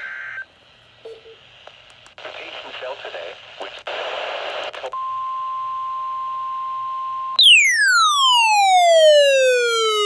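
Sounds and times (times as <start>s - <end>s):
electronic tone sliding down: 7.4s - 10.0s.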